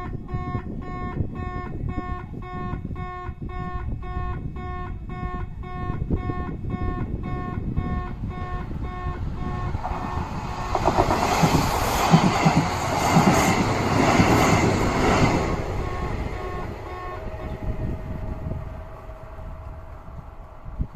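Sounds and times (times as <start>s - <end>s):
train wheels clattering and squealing: 9.8s - 15.7s.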